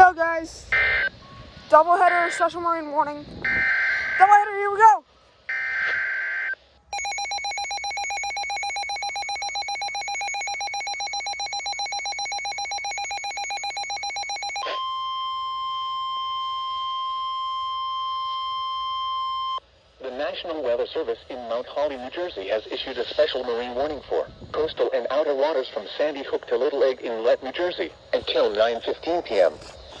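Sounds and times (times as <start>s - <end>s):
steady high warning tone: 0.7s - 4.4s, 5.5s - 19.6s
rapidly pulsing alert tone: 7.0s - 14.6s.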